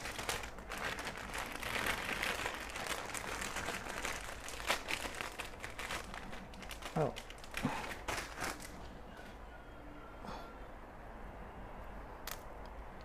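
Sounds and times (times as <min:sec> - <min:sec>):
packaging crinkling and rustling: 0:00.0 - 0:08.9.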